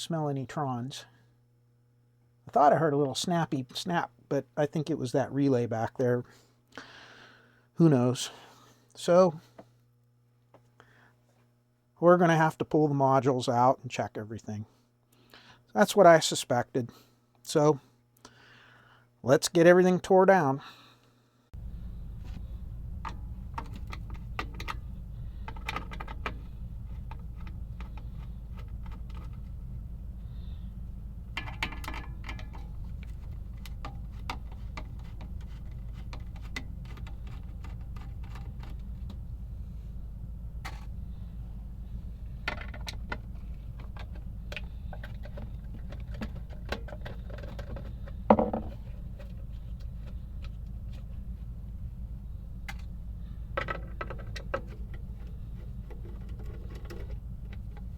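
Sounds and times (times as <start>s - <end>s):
low hum: 21.5s - 57.9s.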